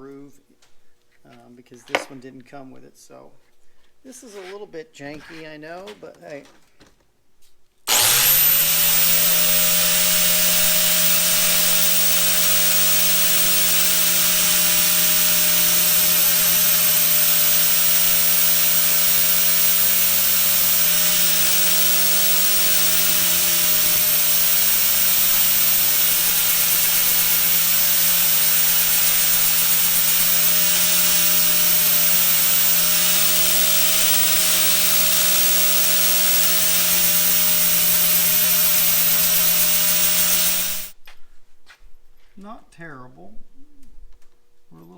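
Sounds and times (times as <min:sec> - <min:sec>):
power tool grinding metal: 0:07.9 - 0:41.0.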